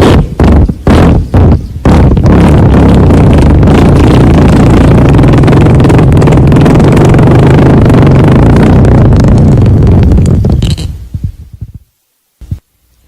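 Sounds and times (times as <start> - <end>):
long loud fart: 0.0 - 10.9.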